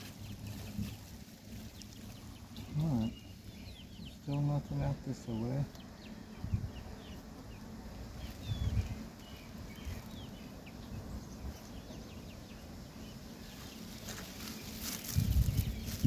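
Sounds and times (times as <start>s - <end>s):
small birds chirping: 0.0s - 16.0s
wind on microphone: 6.3s - 7.1s, 8.1s - 9.1s, 15.0s - 16.0s.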